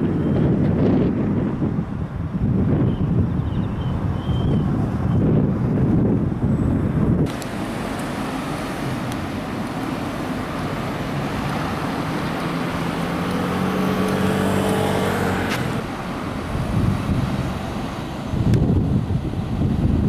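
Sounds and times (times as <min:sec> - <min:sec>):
road traffic rushing: 0:00.0 - 0:20.0
car passing by: 0:06.5 - 0:20.0.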